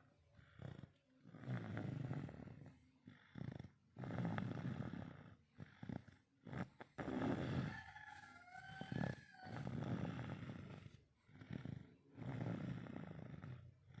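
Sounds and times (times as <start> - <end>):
girl snoring: 0.4 - 8.0, 8.6 - 14.0.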